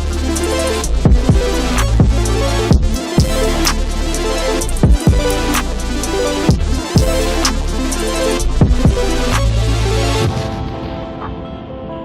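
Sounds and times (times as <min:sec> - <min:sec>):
hi-hat ticks: 0:00.0 - 0:09.6
deep bass line with drops: 0:00.0 - 0:10.4
held synth chords: 0:00.0 - 0:12.0.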